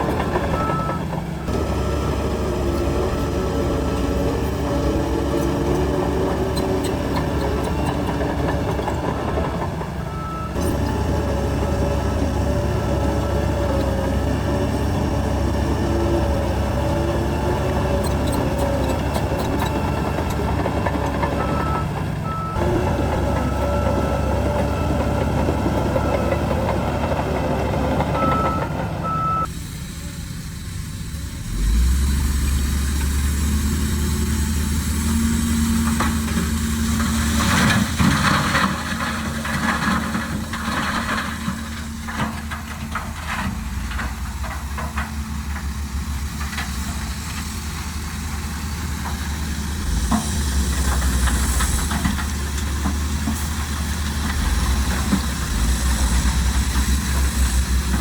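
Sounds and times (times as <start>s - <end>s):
heavy diesel machinery running: 0.0s - 58.0s
rattling and clanking: 35.2s - 58.0s.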